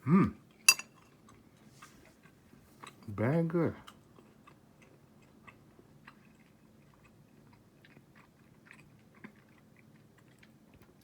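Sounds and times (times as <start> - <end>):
person chewing: 3.9 - 10.6.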